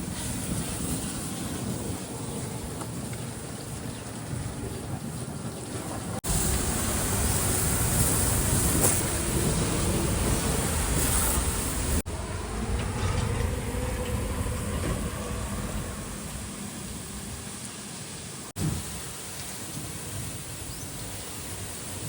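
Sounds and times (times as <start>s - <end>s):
water spraying from hose: 0.0s - 12.0s, 16.8s - 22.0s.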